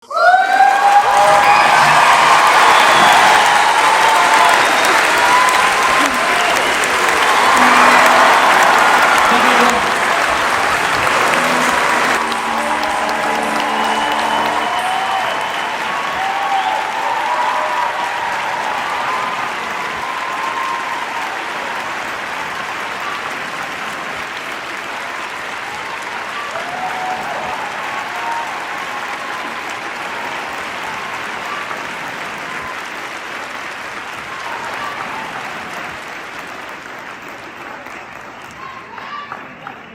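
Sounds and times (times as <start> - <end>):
crowd shouts and whoops: 0.0 - 22.0, 25.8 - 31.7
crowd clapping: 0.1 - 39.9.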